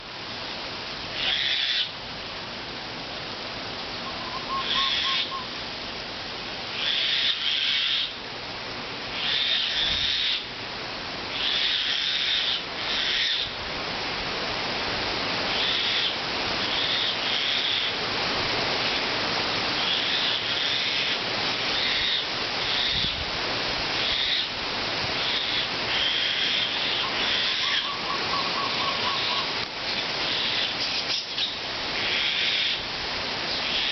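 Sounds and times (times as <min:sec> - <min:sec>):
birds calling: 0:01.1 - 0:02.0, 0:03.9 - 0:05.6, 0:06.7 - 0:08.2, 0:09.1 - 0:10.5, 0:11.3 - 0:13.6, 0:15.5 - 0:18.0, 0:18.8 - 0:23.2, 0:23.9 - 0:33.9
pulsed bird trill: 0:04.0 - 0:05.6, 0:26.9 - 0:29.6
wind on microphone: 0:22.8 - 0:23.4.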